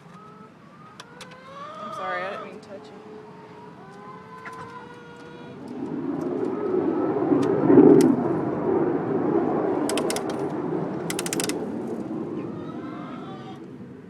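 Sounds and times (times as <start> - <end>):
motor vehicle passing: 1.6 - 14.0
sharp clicks: 9.9 - 11.6.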